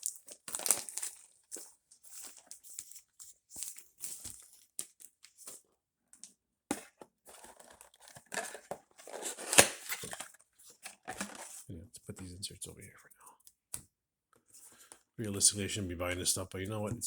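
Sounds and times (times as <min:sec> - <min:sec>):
wrappers crinkling: 0:00.0 - 0:05.6.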